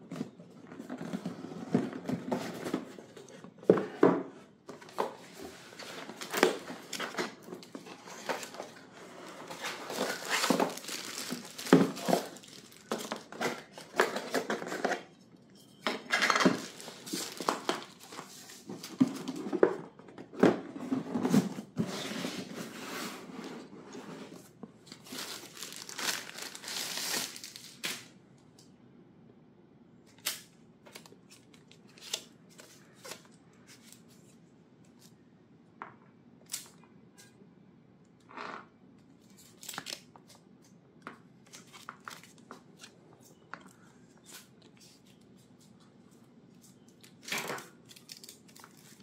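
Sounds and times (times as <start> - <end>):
wrapping crinkling and tearing: 9.4 - 14.2, 16.6 - 18.3, 24.9 - 28.1, 47.0 - 49.0.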